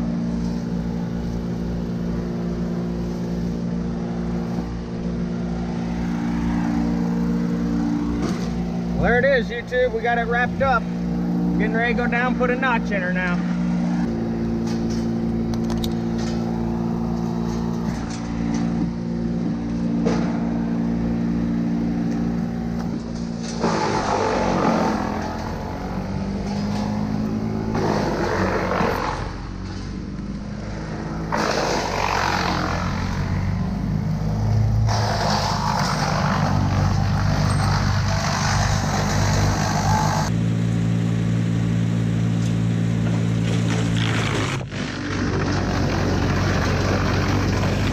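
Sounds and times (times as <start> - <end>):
chainsaw cutting wood: 22.8 - 29.9, 31.3 - 33.4, 34.8 - 40.3, 43.0 - 47.9.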